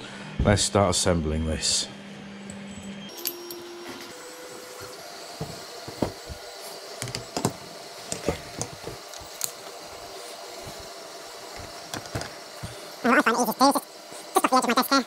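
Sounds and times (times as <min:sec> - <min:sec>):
tools and parts clicking and knocking: 0:07.0 - 0:09.5, 0:11.6 - 0:12.3.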